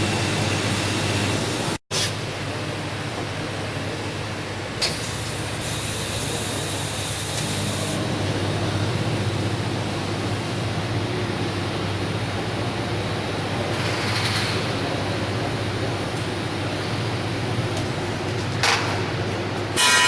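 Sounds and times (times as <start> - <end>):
machinery humming and rushing: 0.0 - 2.7.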